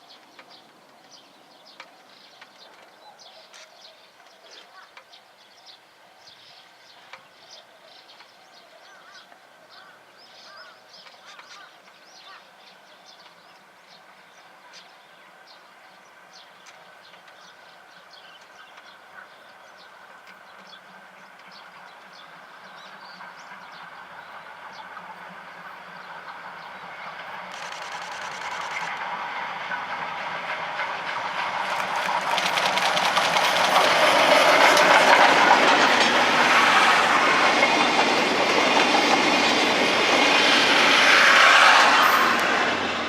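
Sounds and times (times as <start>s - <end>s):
steam train passing: 12.0s - 43.0s
wheels clattering over rail joints: 26.7s - 42.8s.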